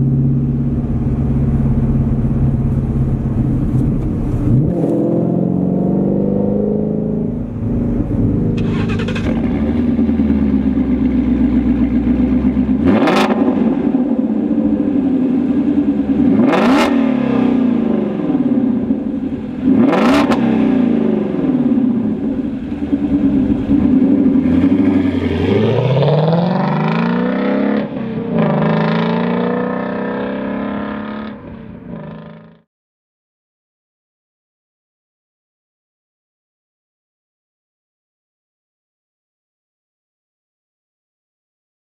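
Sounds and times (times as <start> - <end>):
car engine revving: 0.0 - 32.6
exhaust cracks: 7.8 - 12.7.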